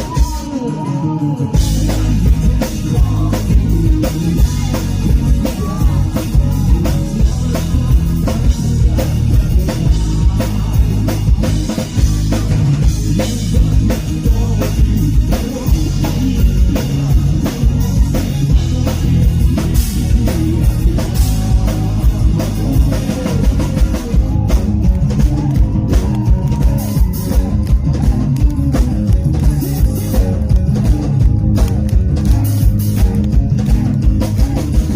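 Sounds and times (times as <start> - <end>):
drum kit beat: 0.0 - 34.9
guitar: 0.0 - 34.9
live rock band acoustic: 0.0 - 34.9.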